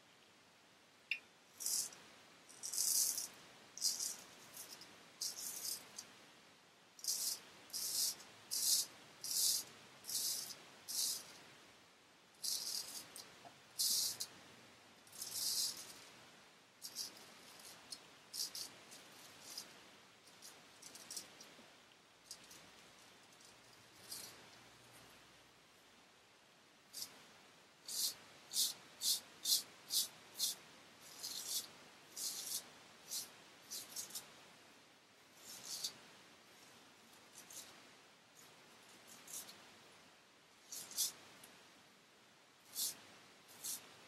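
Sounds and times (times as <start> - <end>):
razor shaving strokes: 1.6 - 6.1, 7.0 - 11.4, 12.4 - 14.3, 15.1 - 16.2, 16.8 - 21.5, 27.8 - 34.3, 35.4 - 36.0, 37.3 - 37.8, 38.4 - 39.6, 40.6 - 41.2, 42.6 - 43.9.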